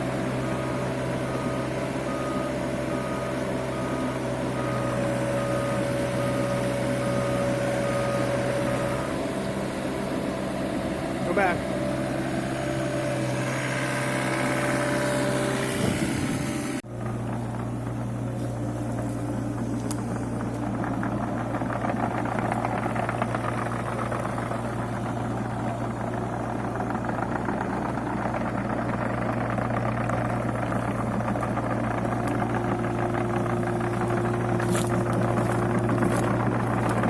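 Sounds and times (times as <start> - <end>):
excavator diesel engine running: 0.0 - 37.0
fine rattle: 16.9 - 37.0.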